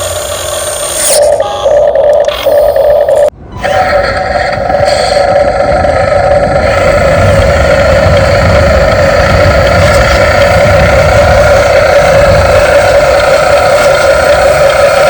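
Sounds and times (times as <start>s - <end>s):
toy truck motor whine: 0.0s - 3.3s
low rumble: 1.9s - 15.0s.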